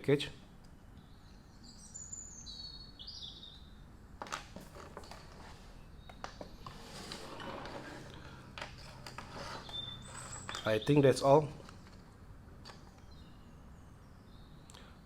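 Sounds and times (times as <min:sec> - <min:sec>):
bird chirping: 0:00.7 - 0:03.9, 0:09.3 - 0:11.7, 0:12.7 - 0:15.0.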